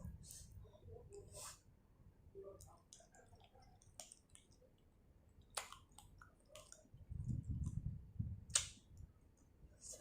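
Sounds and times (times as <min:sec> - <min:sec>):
wet chewing: 0:02.5 - 0:07.9.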